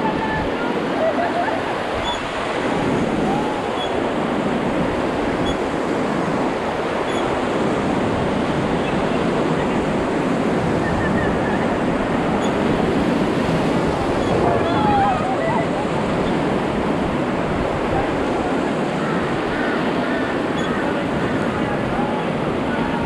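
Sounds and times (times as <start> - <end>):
whitewater rapids rushing: 0.0 - 23.0.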